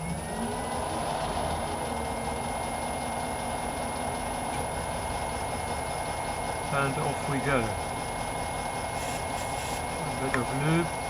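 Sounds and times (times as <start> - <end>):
lathe running: 0.0 - 11.0
faint high whine: 8.6 - 11.0.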